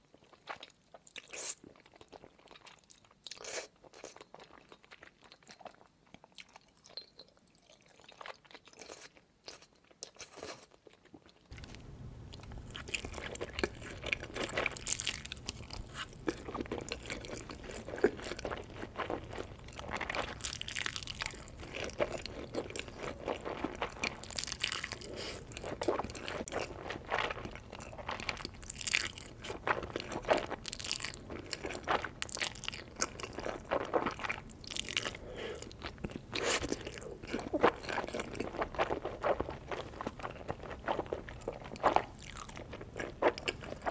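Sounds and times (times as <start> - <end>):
wet chewing and mouth clicks: 0.1 - 43.9
steady low hum: 11.5 - 23.5.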